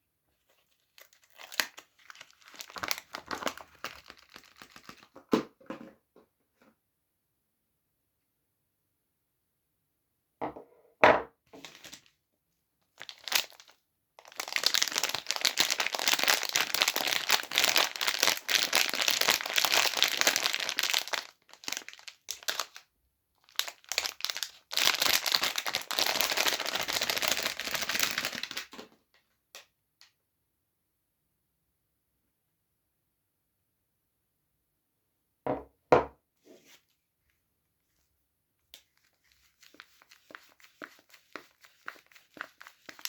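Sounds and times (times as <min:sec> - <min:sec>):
wrapper crinkling: 0:00.4 - 0:05.2, 0:11.6 - 0:12.1, 0:13.0 - 0:22.8, 0:23.4 - 0:28.8, 0:38.8 - 0:43.0.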